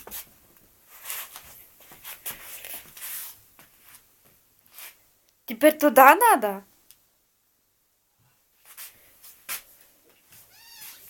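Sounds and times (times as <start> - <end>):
soft rustling and scuffling: 0.0 - 5.0.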